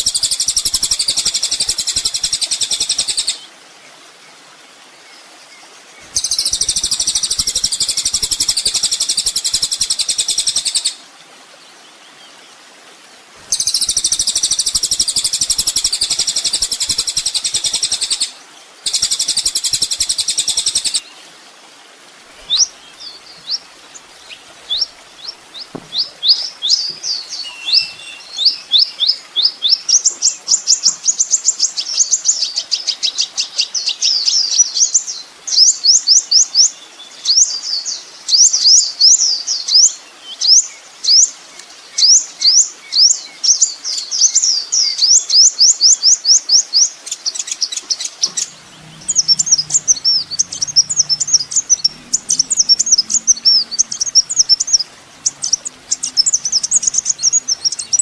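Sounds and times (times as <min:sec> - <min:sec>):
sunbird chirps and trills: 0:06.0 - 0:10.9, 0:22.4 - 0:32.6, 0:42.0 - 0:58.0
faint low hum: 0:48.2 - 0:58.0.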